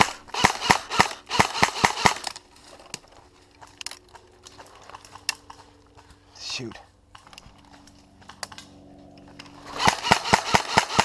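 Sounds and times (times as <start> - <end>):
airsoft gun shots: 0.0 - 2.4, 9.7 - 11.0.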